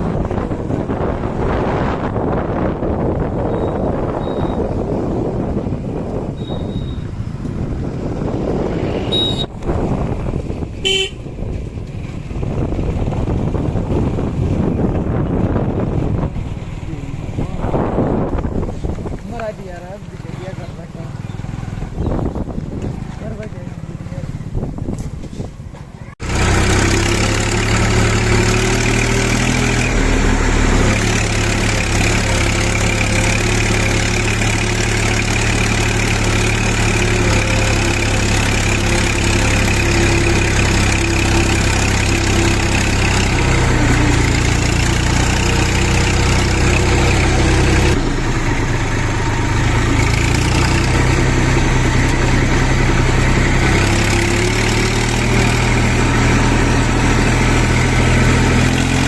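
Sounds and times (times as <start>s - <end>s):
diesel engine running loudly: 26.2s - 59.0s.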